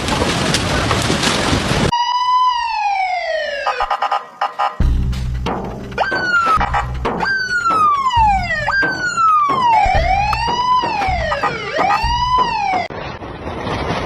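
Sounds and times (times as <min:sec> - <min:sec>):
emergency vehicle siren: 0:01.9 - 0:04.8, 0:05.9 - 0:12.9.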